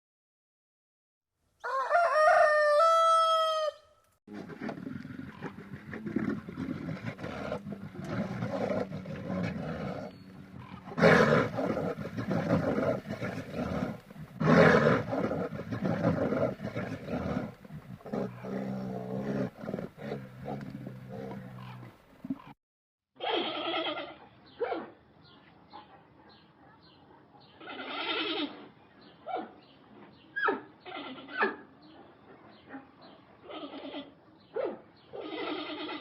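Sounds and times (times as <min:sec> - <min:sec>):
big cat roaring and growling: 0:04.3 - 0:22.4.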